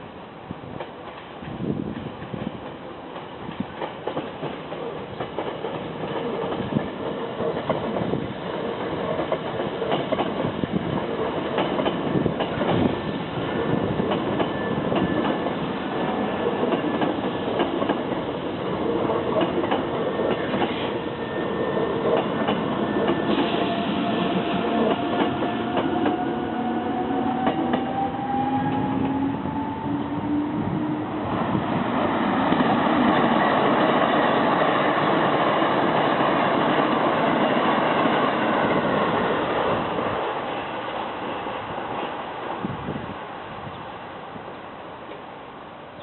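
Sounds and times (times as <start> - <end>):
wheels clacking over rail joints: 18.9 - 21.0.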